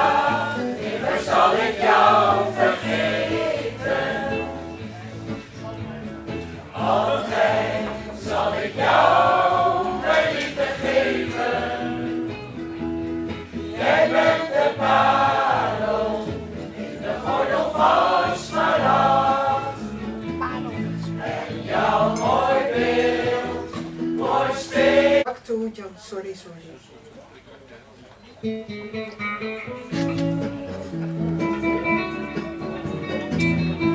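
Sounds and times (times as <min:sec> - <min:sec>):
choir singing: 0:00.0 - 0:04.6, 0:06.7 - 0:12.3, 0:13.7 - 0:20.0, 0:21.0 - 0:25.2.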